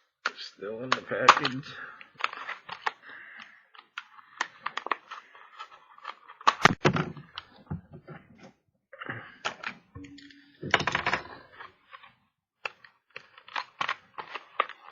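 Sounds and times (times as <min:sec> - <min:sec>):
plastic packaging crackling: 0:12.9 - 0:14.9.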